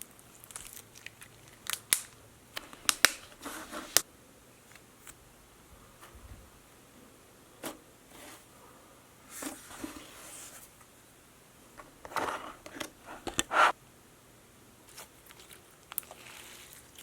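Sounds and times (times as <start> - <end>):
plastic rustling: 0.0 - 4.0.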